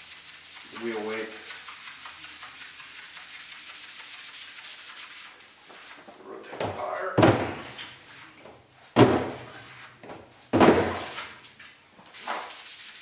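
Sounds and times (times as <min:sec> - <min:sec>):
wheel turning with heavy thud: 0:06.6 - 0:07.9, 0:09.0 - 0:11.3.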